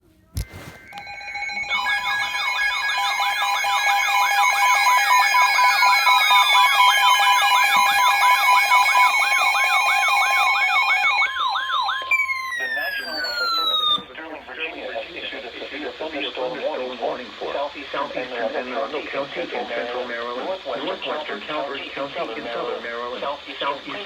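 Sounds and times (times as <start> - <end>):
steady alarm tones: 0.5 - 14.1
fast warbling siren: 0.8 - 14.1.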